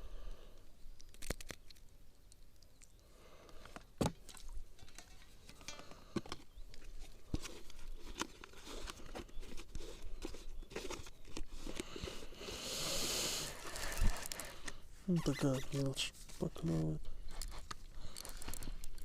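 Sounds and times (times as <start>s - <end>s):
handling clicks and rustles: 3.6s - 12.0s, 13.5s - 19.0s.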